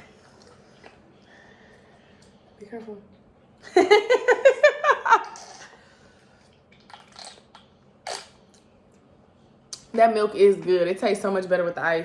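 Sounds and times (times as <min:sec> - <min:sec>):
person laughing: 0:03.8 - 0:05.8.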